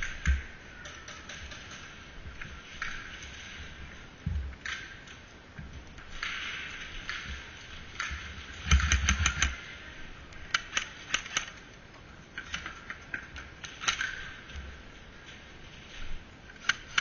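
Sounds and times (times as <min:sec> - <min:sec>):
sharp clicks and snaps: 0:05.8 - 0:09.6, 0:10.3 - 0:14.7, 0:16.6 - 0:17.0.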